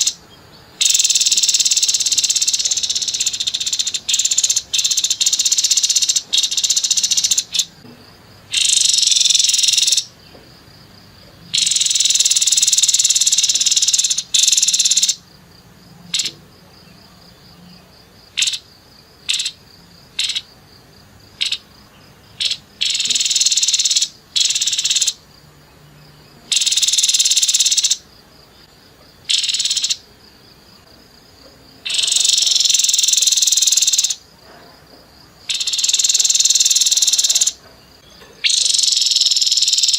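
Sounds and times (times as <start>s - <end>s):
bird rattling calls: 0.8s - 7.8s, 8.5s - 10.1s, 11.6s - 15.2s, 19.2s - 19.6s, 20.2s - 20.5s, 22.4s - 25.2s, 26.5s - 28.0s, 31.9s - 34.2s, 35.5s - 37.6s.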